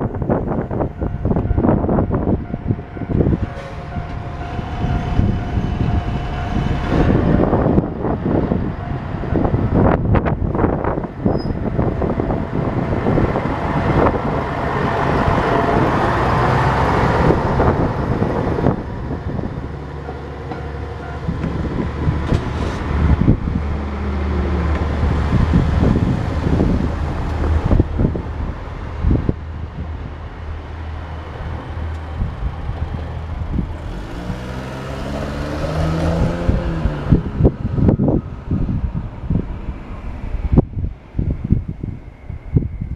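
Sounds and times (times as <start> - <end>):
engine pulling away: 20.8 - 29.2, 31.5 - 42.0.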